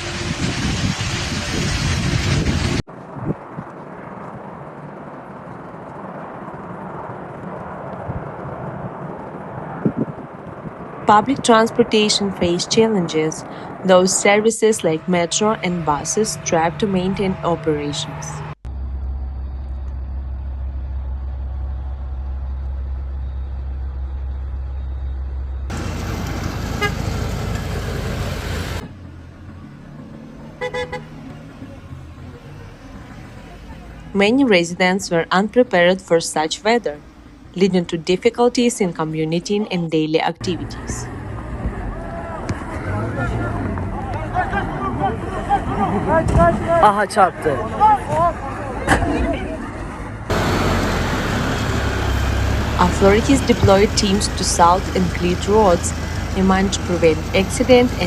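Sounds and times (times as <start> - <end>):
low vehicle rumble: 0.0 - 39.7, 40.4 - 58.0
outdoor background noise: 0.0 - 58.0
car horn toots: 26.7 - 27.2, 30.6 - 31.2.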